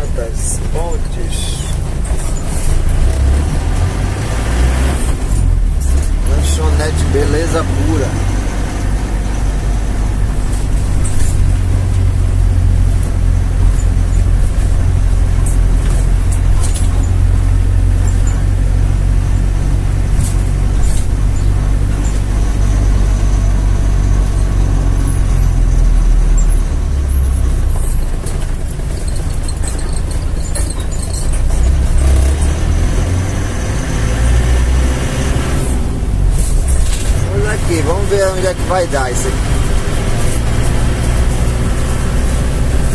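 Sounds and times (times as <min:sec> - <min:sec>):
vehicle driving rumble: 0:00.0 - 0:42.9
light rattles and clicks: 0:10.3 - 0:18.7, 0:27.4 - 0:32.2.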